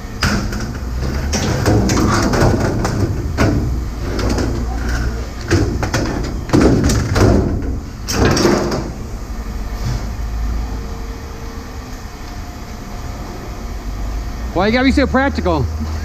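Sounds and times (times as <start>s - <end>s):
metal clanking and scraping: 0.2s - 9.0s.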